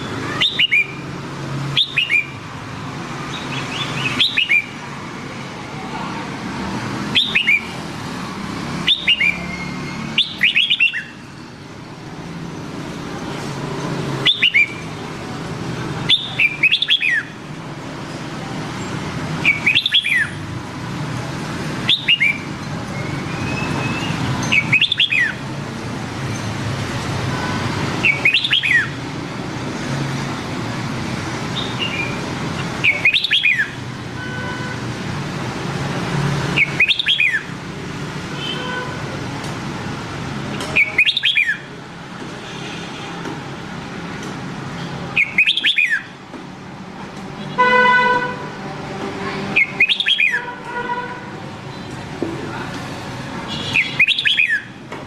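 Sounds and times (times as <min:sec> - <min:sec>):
bird singing whistled phrases: 0:00.3 - 0:01.0, 0:01.8 - 0:02.4, 0:03.7 - 0:04.7, 0:07.1 - 0:07.7, 0:08.9 - 0:11.2, 0:14.2 - 0:14.8, 0:16.1 - 0:17.3, 0:19.4 - 0:20.4, 0:21.9 - 0:25.4, 0:28.0 - 0:28.9, 0:32.8 - 0:33.8, 0:36.6 - 0:37.5, 0:40.8 - 0:41.7, 0:45.2 - 0:46.1, 0:49.6 - 0:50.4, 0:53.6 - 0:54.7.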